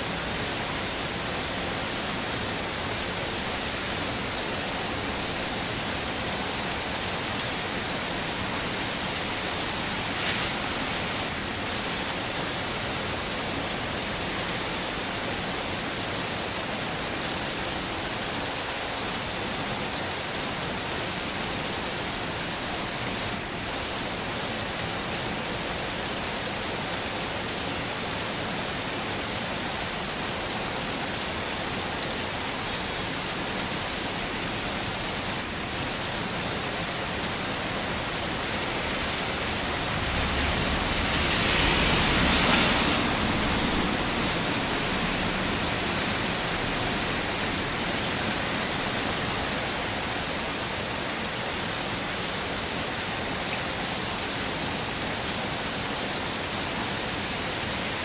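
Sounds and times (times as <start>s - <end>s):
heavy rain hissing: 0.0s - 58.0s.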